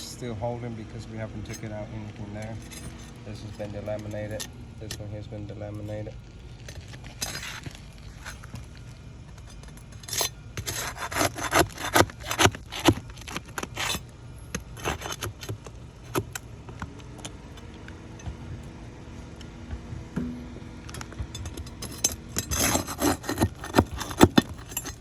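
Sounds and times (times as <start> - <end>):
light scrapes and clicks: 6.6 - 16.4, 21.5 - 25.0
harsh scraping and tearing: 9.4 - 16.4, 21.6 - 25.0
roof shingles being scraped loose: 9.4 - 16.4, 21.5 - 25.0.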